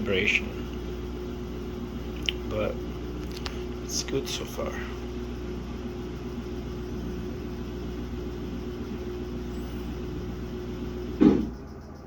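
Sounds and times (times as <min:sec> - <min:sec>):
washing machine spinning: 0:00.0 - 0:12.0
loud thump: 0:11.2 - 0:11.6.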